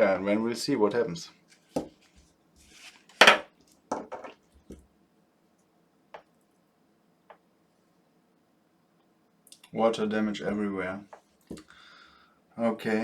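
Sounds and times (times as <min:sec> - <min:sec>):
hard objects knocking on workbench: 0:03.2 - 0:04.4.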